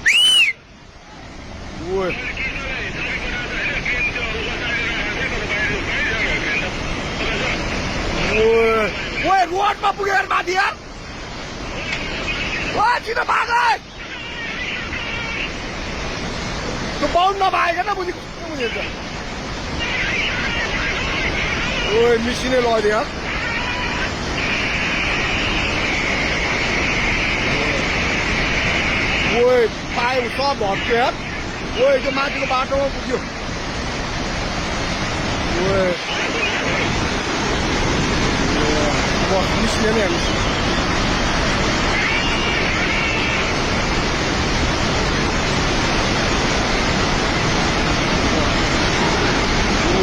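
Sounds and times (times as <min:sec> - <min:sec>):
high steady hiss: 0:00.0 - 0:50.0
river torrent roaring: 0:00.0 - 0:50.0.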